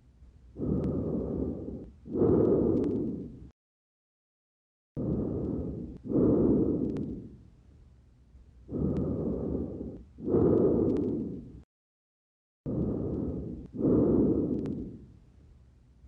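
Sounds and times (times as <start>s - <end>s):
breath sounds through stethoscope: 0.6s - 3.5s, 5.0s - 7.5s, 8.7s - 11.7s, 12.7s - 15.2s
faint clicks: 1.8s - 3.2s, 6.7s - 7.1s, 10.0s - 11.3s, 14.5s - 14.9s.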